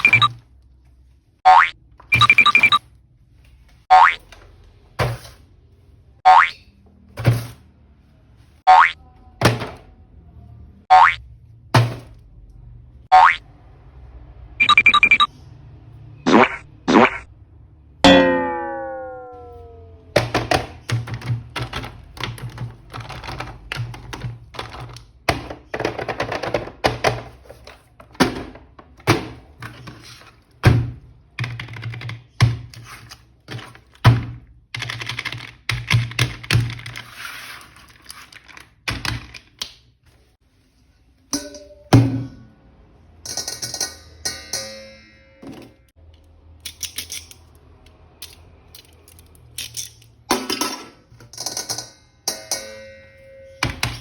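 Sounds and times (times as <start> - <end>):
plastic toys and packaging handled: 20.2 - 30.8, 31.4 - 41.2, 46.0 - 50.3.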